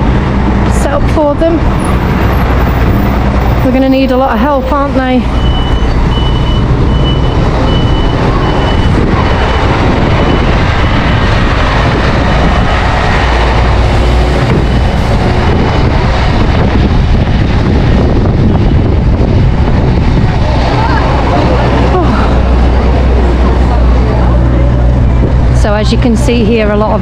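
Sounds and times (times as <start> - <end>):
wind buffeting microphone: 0.0 - 27.0
vehicle reversing alarm beeps: 4.6 - 9.0.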